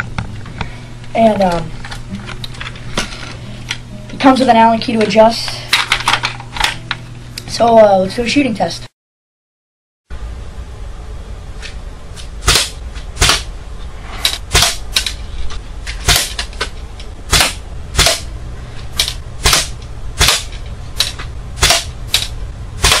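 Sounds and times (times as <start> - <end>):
low hum: 0.0 - 8.8, 10.1 - 23.0
airsoft rifle shots snapping: 12.4 - 13.5, 14.3 - 15.2, 16.0 - 16.5, 17.3 - 18.3, 19.0 - 23.0.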